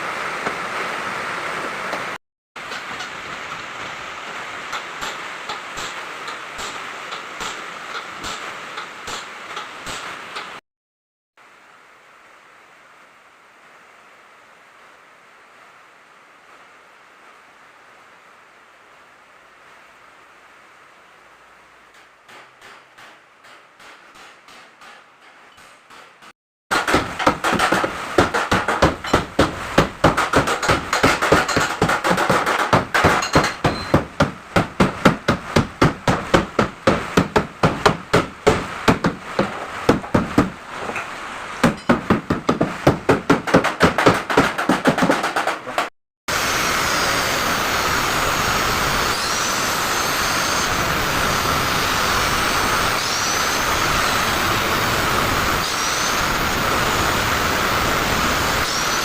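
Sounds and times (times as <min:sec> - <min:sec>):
hammer blows on sheet metal: 0:22.2 - 0:40.8.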